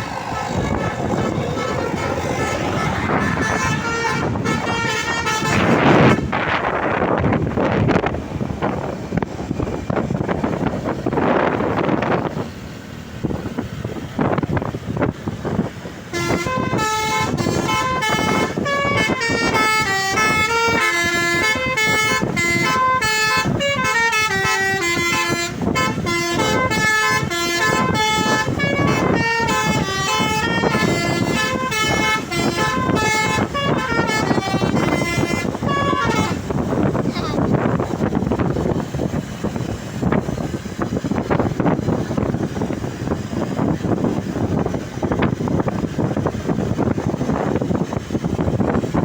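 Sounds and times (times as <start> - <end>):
multi-tone bus horn melody: 0.0 - 8.2, 15.9 - 39.2
bus passing: 0.0 - 49.0
wind buffeting microphone: 0.0 - 49.0.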